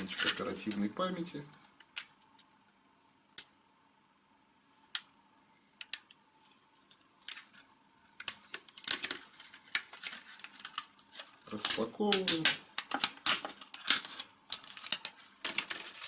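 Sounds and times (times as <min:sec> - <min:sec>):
crackly packaging rustle: 0:00.0 - 0:02.5, 0:05.8 - 0:16.0.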